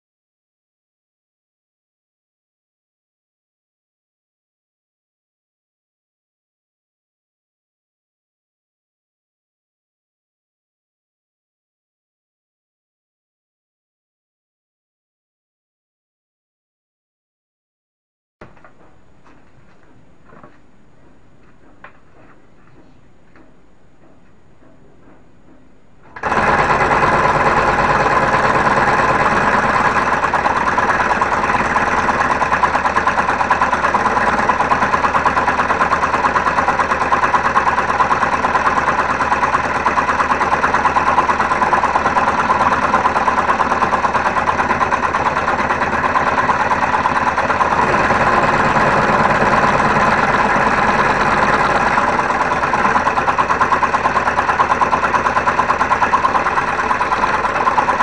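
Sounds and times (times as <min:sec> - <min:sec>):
scroll saw buzzing: 0:26.2 - 0:39.1, 0:41.0 - 0:58.0.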